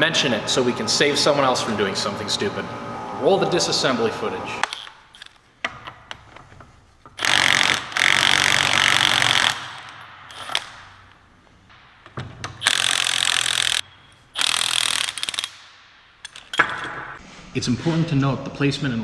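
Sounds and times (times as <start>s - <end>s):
impact wrench bursts: 3.8s - 5.4s, 7.2s - 11.1s, 12.6s - 16.7s.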